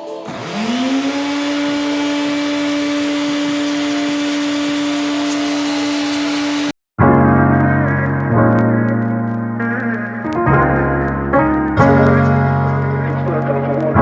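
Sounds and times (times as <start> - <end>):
music: 0.0 - 0.4, 7.0 - 14.0
electric motor whining: 0.2 - 6.8.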